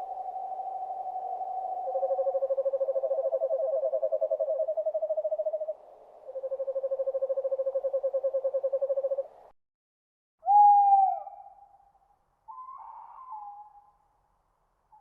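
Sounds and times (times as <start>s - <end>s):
owl trills: 0.0s - 9.3s, 10.4s - 14.0s
owl whistled note: 10.4s - 11.8s, 12.5s - 14.0s.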